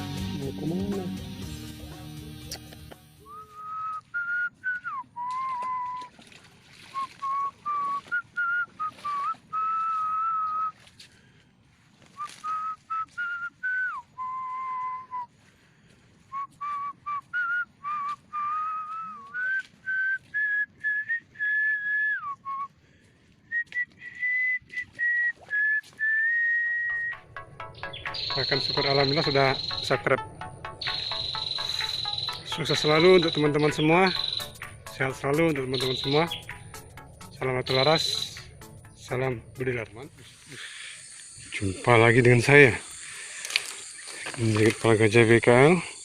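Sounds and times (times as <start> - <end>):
person whistling notes: 2.5 - 6.1, 6.9 - 10.8, 12.2 - 15.3, 16.3 - 22.8, 23.5 - 30.2, 30.8 - 39.0.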